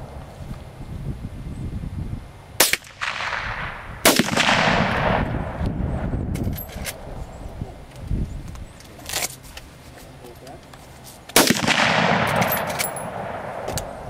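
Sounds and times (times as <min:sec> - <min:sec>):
gunshots with rolling echo: 0:02.6 - 0:06.2, 0:11.4 - 0:14.0.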